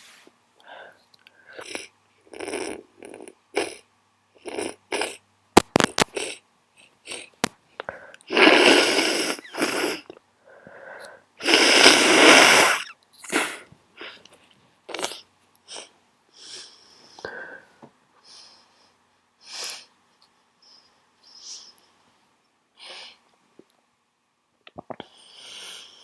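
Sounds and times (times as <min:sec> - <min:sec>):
person sniffling: 0:06.2 - 0:10.1, 0:10.8 - 0:14.2
person sneezing: 0:08.3 - 0:10.1, 0:11.4 - 0:14.2.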